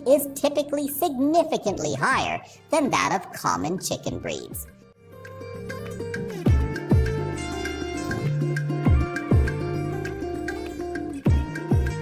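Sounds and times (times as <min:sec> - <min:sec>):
plucked-string melody: 0:03.8 - 0:12.0.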